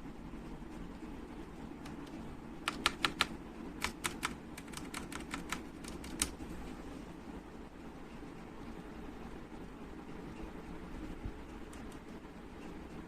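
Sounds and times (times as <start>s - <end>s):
mechanical keyboard key clacks: 2.6s - 6.4s.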